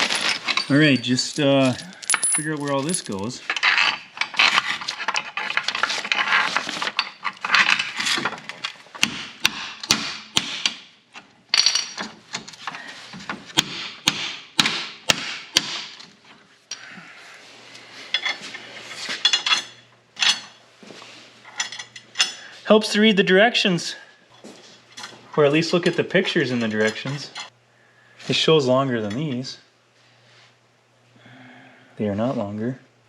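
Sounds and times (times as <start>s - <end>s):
bolts rustling and rattling: 0.0s - 9.0s, 10.7s - 13.6s, 18.1s - 20.6s, 21.4s - 22.5s, 24.3s - 27.5s.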